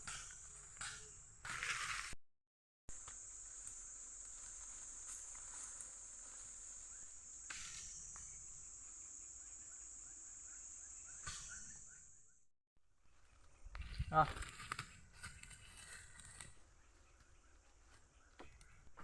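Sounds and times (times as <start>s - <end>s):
high-pitched insect drone: 2.9s - 12.3s
faint chirps: 3.4s - 12.4s.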